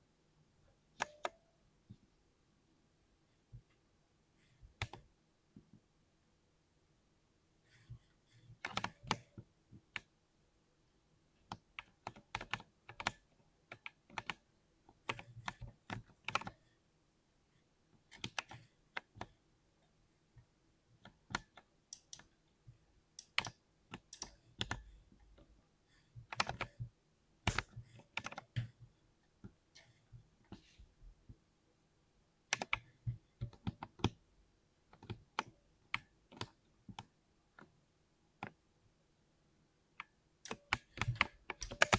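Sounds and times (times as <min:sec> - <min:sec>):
mechanical keyboard typing: 0:01.0 - 0:01.4, 0:08.6 - 0:09.4, 0:11.5 - 0:14.4, 0:15.0 - 0:16.6, 0:18.1 - 0:19.3, 0:21.1 - 0:22.3, 0:23.2 - 0:24.9, 0:26.2 - 0:26.8, 0:27.4 - 0:28.8, 0:32.5 - 0:34.2, 0:40.0 - 0:41.9.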